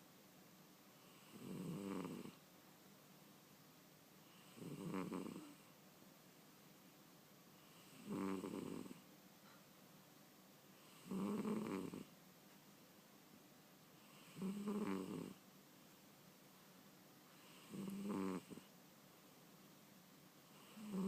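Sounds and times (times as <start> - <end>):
cat snoring: 1.0 - 2.4, 4.2 - 5.7, 7.6 - 9.0, 10.8 - 12.1, 14.0 - 15.4, 17.3 - 18.7, 20.4 - 21.0.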